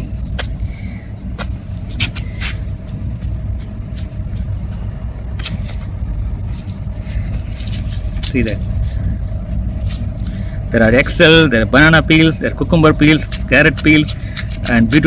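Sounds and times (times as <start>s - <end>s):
faint hum: 0.0s - 15.0s
low rumble: 0.0s - 15.0s.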